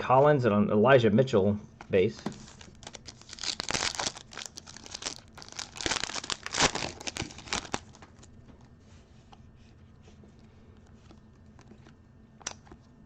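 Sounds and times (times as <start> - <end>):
foil wrapper tearing and crinkling: 2.2 - 8.2.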